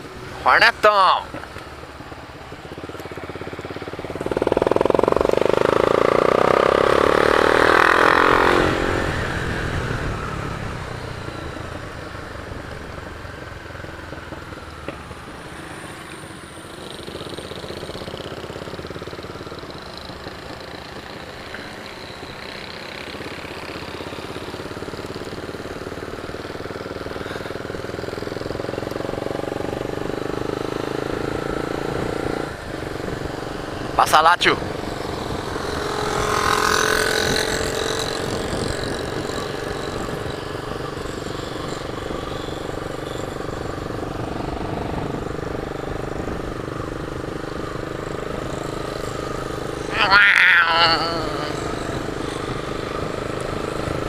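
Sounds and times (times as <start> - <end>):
loud vehicle passing: 0.0 - 11.8, 29.0 - 40.8, 44.0 - 54.0
motorcycle engine: 0.0 - 54.0.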